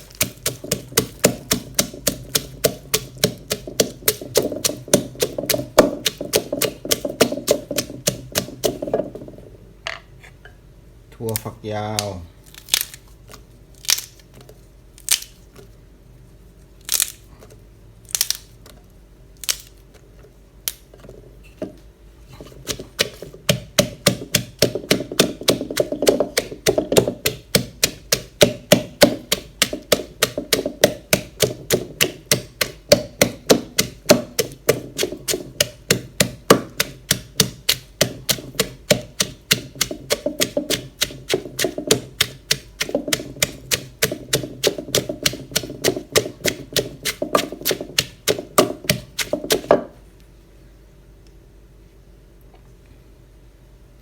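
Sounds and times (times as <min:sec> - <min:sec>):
pestle pounding in a mortar: 0:00.0 - 0:09.4, 0:22.4 - 0:50.0.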